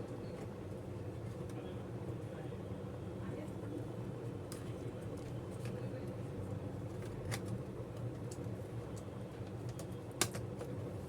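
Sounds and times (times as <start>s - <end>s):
light clicks of laptop parts: 6.9s - 10.8s.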